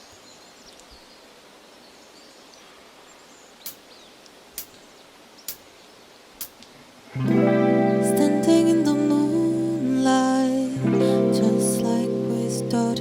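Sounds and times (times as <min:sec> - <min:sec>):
soft bird chirps: 0:00.0 - 0:06.5
outdoor ambience: 0:00.0 - 0:11.4
sharp count-in clicks: 0:03.6 - 0:04.8.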